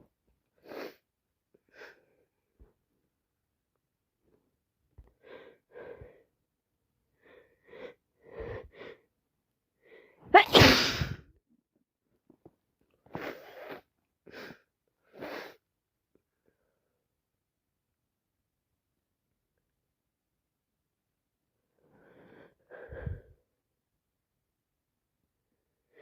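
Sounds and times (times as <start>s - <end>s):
woman sneezing: 10.4s - 11.2s
short sniffs: 13.1s - 13.9s, 15.1s - 15.6s
short breaths: 21.9s - 23.4s.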